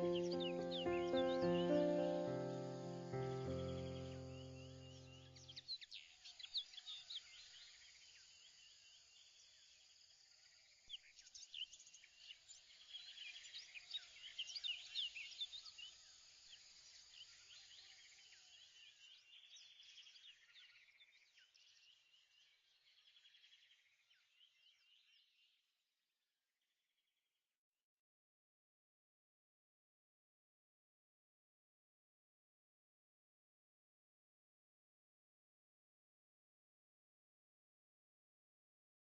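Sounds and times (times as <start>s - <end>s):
small birds chirping: 0.0s - 25.6s.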